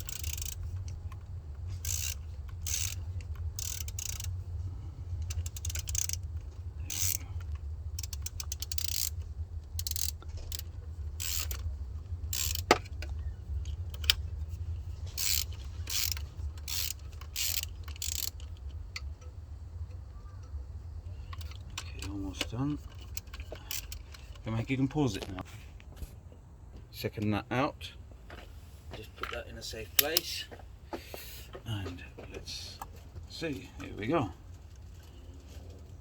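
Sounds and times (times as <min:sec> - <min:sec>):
sharp metallic clicks: 0:00.0 - 0:04.4, 0:05.2 - 0:14.5, 0:15.2 - 0:20.6, 0:29.9 - 0:30.4
ratchet spanner clicking: 0:00.0 - 0:20.6, 0:21.2 - 0:25.2
steady low hum: 0:00.0 - 0:36.0.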